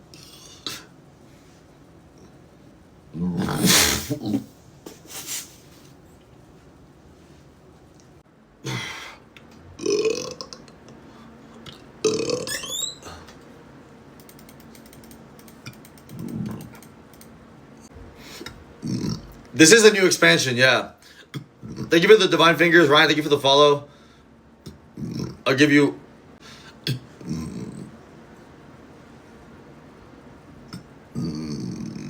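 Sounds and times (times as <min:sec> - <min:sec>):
man burping: 0:09.8 - 0:10.8, 0:12.0 - 0:13.3, 0:18.8 - 0:19.4, 0:26.8 - 0:27.9, 0:30.7 - 0:32.0
faint clicks: 0:14.2 - 0:17.3.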